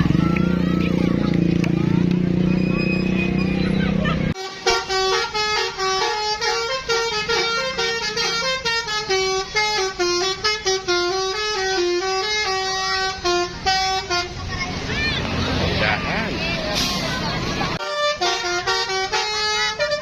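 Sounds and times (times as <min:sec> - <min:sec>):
bus horn playing melody: 0:04.2 - 0:14.4, 0:17.8 - 0:20.0.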